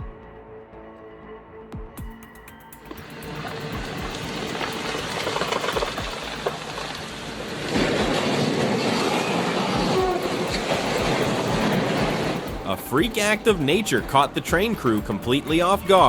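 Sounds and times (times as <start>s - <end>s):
train rumbling on rails: 3.0s - 13.5s.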